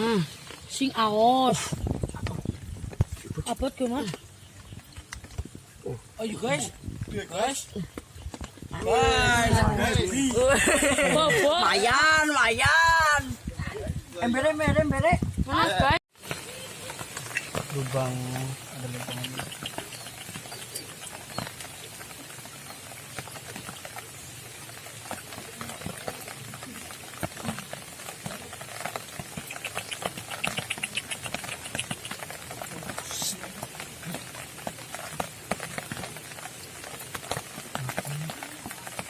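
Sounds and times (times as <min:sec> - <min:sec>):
light rain pattering: 0:00.0 - 0:39.0
rapid chirping trill: 0:19.0 - 0:21.4, 0:29.4 - 0:32.3.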